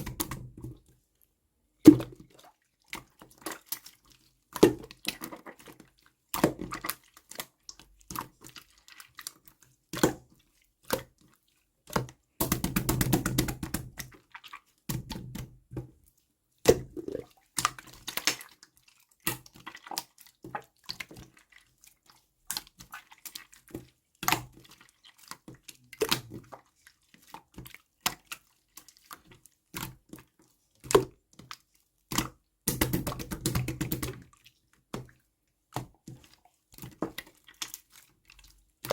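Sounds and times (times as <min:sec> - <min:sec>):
wet squishing and dripping: 0:00.0 - 0:38.9.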